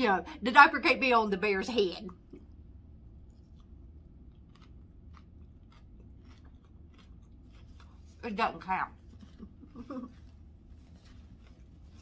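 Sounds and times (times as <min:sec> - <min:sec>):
person chewing food: 0:02.1 - 0:08.2, 0:09.0 - 0:12.0.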